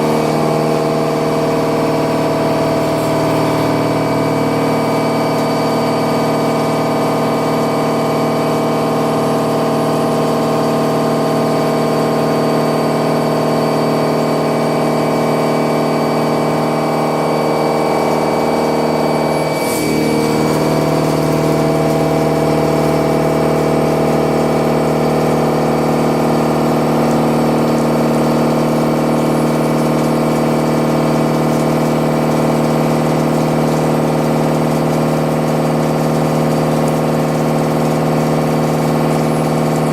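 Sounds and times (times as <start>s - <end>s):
milling machine cutting metal: 0.0s - 39.9s.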